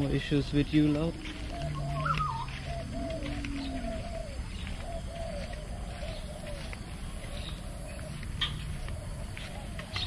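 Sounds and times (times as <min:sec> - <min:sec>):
pigeons cooing: 0:00.0 - 0:10.0
short repeated bird calls: 0:01.2 - 0:06.7.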